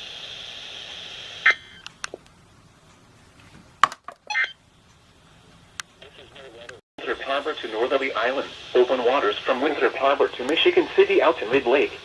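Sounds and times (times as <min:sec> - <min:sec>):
radio broadcast audio: 0:06.0 - 0:12.0.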